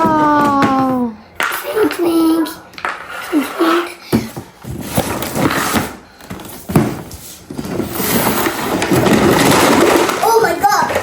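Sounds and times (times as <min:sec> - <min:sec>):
packaging tearing and rustling: 0:07.6 - 0:10.5.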